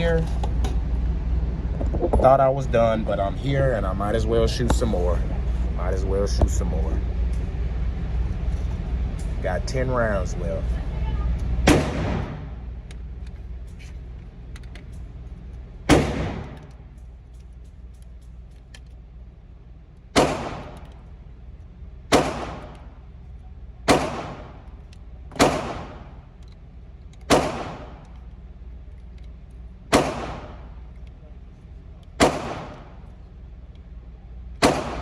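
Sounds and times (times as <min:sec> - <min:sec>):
pistol shots with echo: 0:11.7 - 0:12.6, 0:15.9 - 0:16.7, 0:20.1 - 0:20.9, 0:22.1 - 0:22.9, 0:23.8 - 0:24.7, 0:25.3 - 0:26.2, 0:27.2 - 0:28.1, 0:29.9 - 0:30.8, 0:32.2 - 0:33.0, 0:34.6 - 0:35.0.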